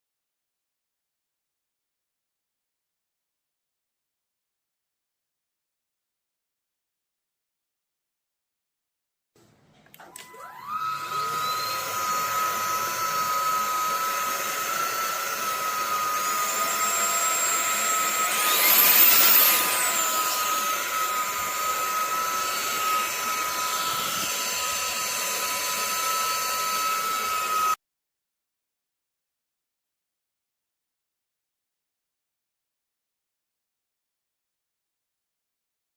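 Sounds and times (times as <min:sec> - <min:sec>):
vacuum cleaner motor whining: 0:10.0 - 0:27.8.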